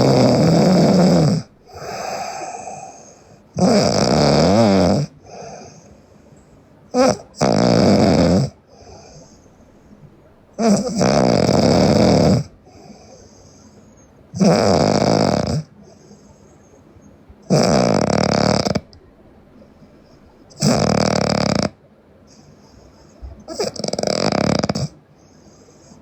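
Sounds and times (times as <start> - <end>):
faint breaths: 0.0 - 3.9, 5.0 - 7.6, 8.5 - 11.1, 11.8 - 14.4, 15.6 - 17.8, 18.6 - 20.8, 21.9 - 23.8, 24.6 - 26.0
girl snoring loudly: 0.0 - 5.8, 6.9 - 8.6, 10.6 - 12.5, 14.4 - 15.7, 17.5 - 18.9, 20.6 - 21.8, 23.5 - 25.0
short snort: 3.6 - 5.7, 17.5 - 18.9, 20.6 - 21.4.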